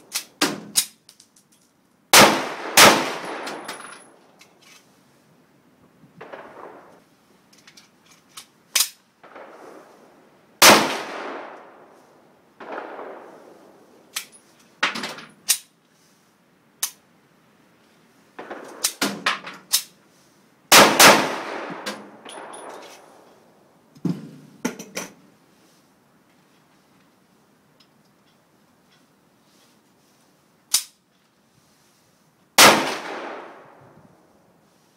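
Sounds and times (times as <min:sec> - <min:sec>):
pistol shots with echo: 0:20.7 - 0:22.5, 0:32.6 - 0:33.8.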